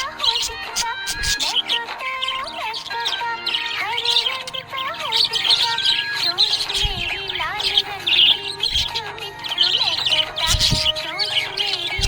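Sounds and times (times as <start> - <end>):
budgies chirping and warbling: 0.0 - 12.0.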